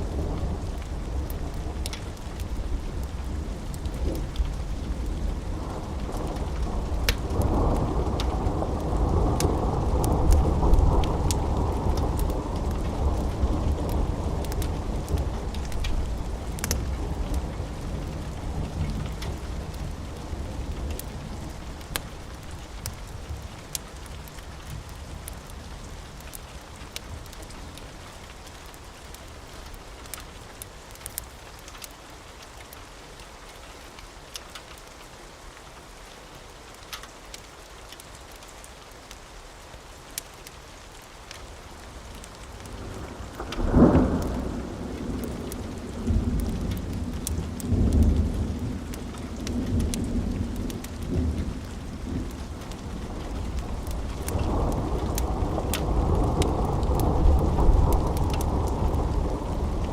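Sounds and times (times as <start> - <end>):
rolling thunder: 0.0 - 23.4, 42.6 - 59.9
steady rain: 0.0 - 59.9
thunderclap: 42.8 - 59.9.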